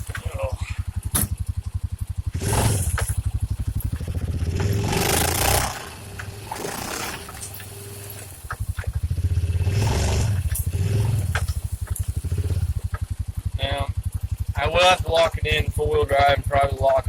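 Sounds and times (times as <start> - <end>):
utility vehicle engine running: 0.0 - 17.0
short rushing scrape: 2.4 - 3.3, 4.5 - 8.7
clicks and knocks over rock: 6.1 - 9.1.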